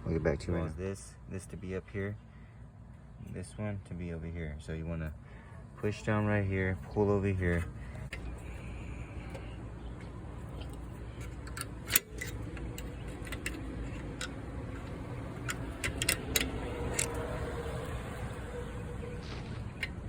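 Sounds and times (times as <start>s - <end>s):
steady low hum: 0.0s - 20.0s
metallic clicks and taps: 10.6s - 17.3s.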